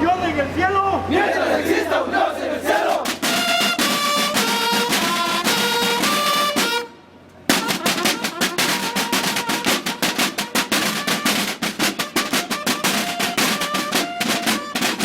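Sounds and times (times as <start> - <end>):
drum beats: 2.7 - 6.9, 7.5 - 15.0
brass melody: 3.1 - 15.0.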